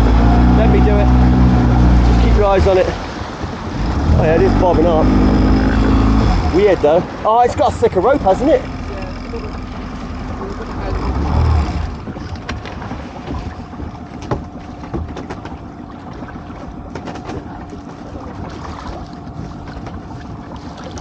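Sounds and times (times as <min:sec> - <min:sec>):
wind on microphone: 0:00.0 - 0:06.6
boat motor ticking over: 0:00.0 - 0:21.0
water noise: 0:00.0 - 0:21.0
sharp knocks: 0:12.0 - 0:15.6.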